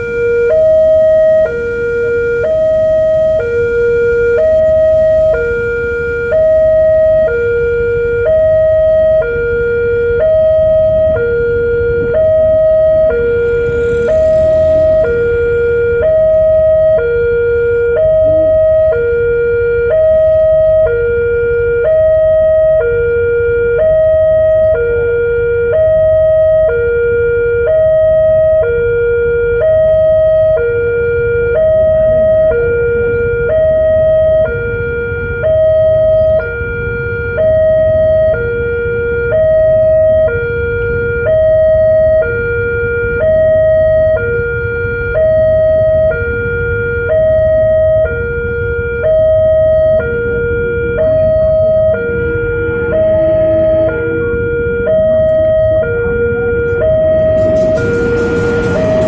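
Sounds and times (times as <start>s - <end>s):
level crossing two-tone alarm: 0.0s - 59.0s
low rumble: 4.4s - 22.7s, 50.9s - 59.0s.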